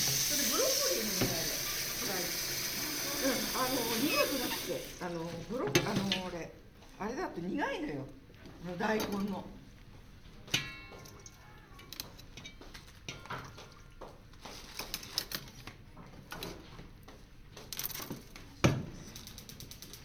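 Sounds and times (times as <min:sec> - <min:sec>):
utensils and dishes clinking: 0:00.0 - 0:04.7, 0:10.4 - 0:14.0.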